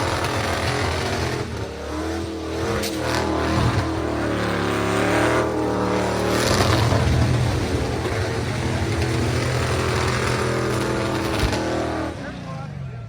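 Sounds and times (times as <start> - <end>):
car engine revving: 0.0 - 13.0
deep rumble: 3.1 - 12.0.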